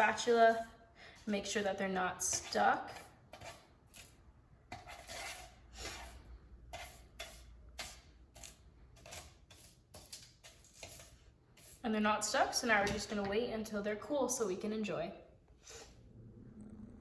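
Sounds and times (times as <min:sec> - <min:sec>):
spatula scraping baking pan: 0:00.0 - 0:13.2.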